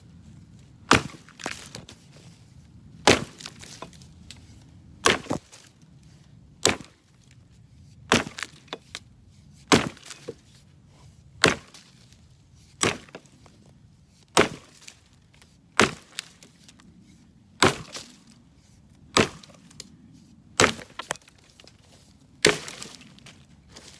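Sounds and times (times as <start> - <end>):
axe chopping wood: 0.9 - 2.0, 3.0 - 4.0, 5.0 - 5.6, 6.6 - 7.0, 8.1 - 9.0, 9.7 - 10.4, 11.4 - 11.9, 12.8 - 13.4, 14.4 - 15.0, 15.8 - 16.6, 17.6 - 18.2, 19.1 - 19.9, 20.6 - 21.4, 22.4 - 23.9.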